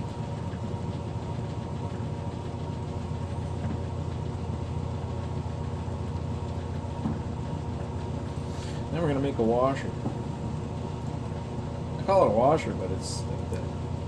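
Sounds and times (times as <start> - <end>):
metal lathe humming: 5.0 - 14.0.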